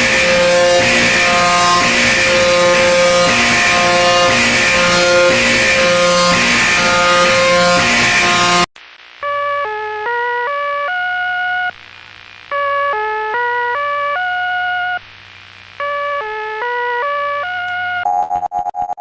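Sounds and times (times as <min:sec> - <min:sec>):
loud music: 0:00.0 - 0:08.7.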